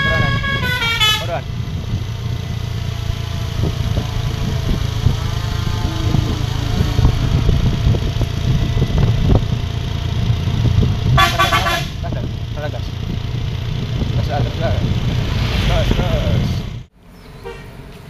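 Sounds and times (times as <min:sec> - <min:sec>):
multi-note bus horn: 0:00.0 - 0:01.5, 0:05.3 - 0:08.2, 0:11.0 - 0:12.2, 0:17.4 - 0:17.8
bus engine running: 0:00.0 - 0:18.0.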